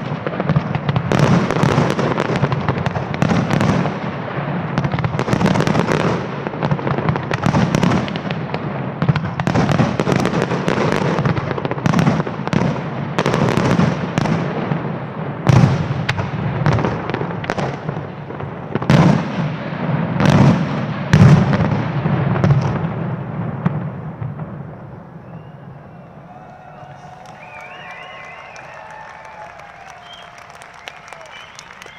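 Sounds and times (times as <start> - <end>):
heavy firework booms: 0.0 - 25.0
fireworks bangs: 0.0 - 31.9.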